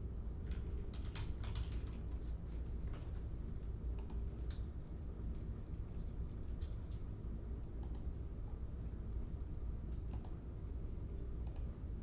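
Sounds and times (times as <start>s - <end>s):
steady low hum: 0.0s - 12.0s
keyboard typing: 0.5s - 2.2s, 3.9s - 4.6s, 9.9s - 10.4s, 11.4s - 11.7s.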